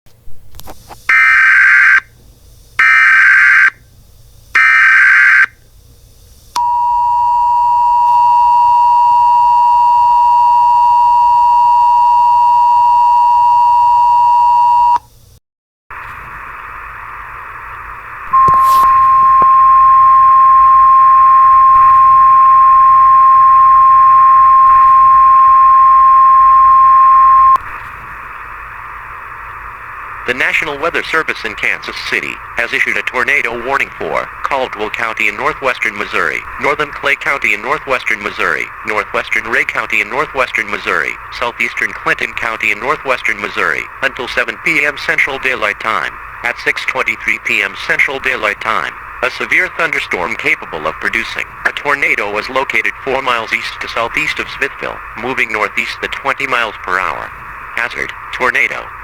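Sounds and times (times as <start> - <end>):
radio static hiss: 0.1 - 6.7, 15.9 - 59.0
two-tone attention signal: 18.3 - 27.6
data burst tones: 18.3 - 27.7, 30.2 - 58.9.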